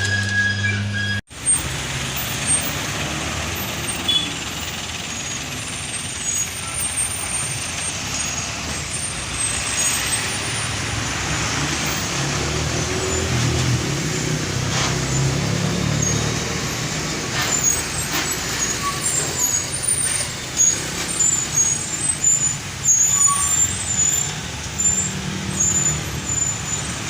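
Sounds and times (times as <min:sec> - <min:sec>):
truck engine rumble: 0:00.0 - 0:27.0
tyre and road noise: 0:00.0 - 0:27.0
faint high squeaks: 0:17.4 - 0:27.0.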